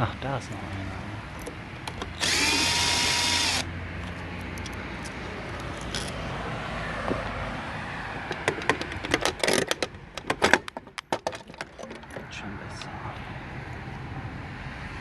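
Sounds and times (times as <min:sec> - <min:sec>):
cordless drill spinning out screw: 0:02.2 - 0:03.6.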